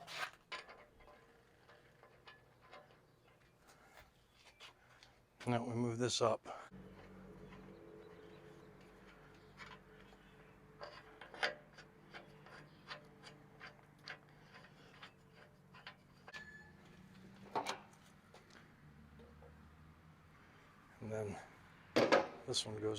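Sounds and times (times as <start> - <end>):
metal hardware clicks and knocks: 0.4 - 3.6, 6.7 - 19.6, 22.0 - 22.5.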